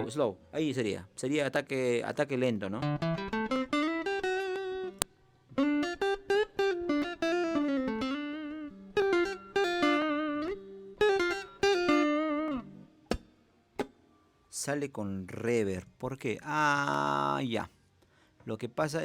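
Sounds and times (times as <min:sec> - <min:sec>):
clean electric guitar melody: 0:02.8 - 0:14.2.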